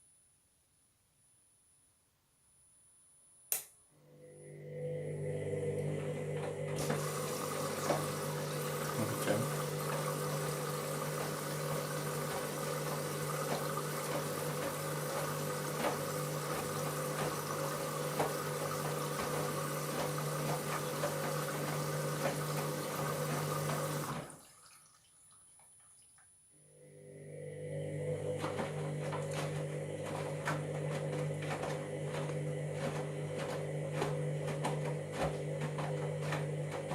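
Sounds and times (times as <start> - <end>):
washing machine drum turning: 5.6 - 24.4, 28.0 - 36.9
water swishing: 6.8 - 25.6
motor humming: 27.3 - 36.9.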